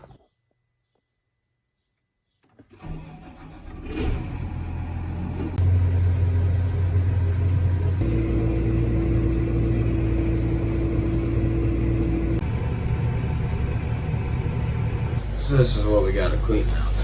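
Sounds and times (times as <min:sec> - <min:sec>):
engine running: 0:02.7 - 0:17.0.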